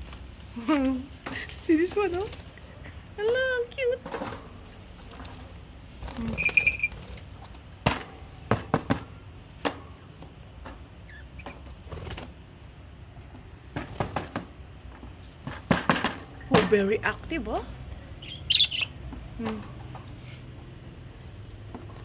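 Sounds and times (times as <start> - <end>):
birds clicking and tapping: 0.7 - 9.8, 13.2 - 22.0
budgerigar chirp: 18.2 - 19.0.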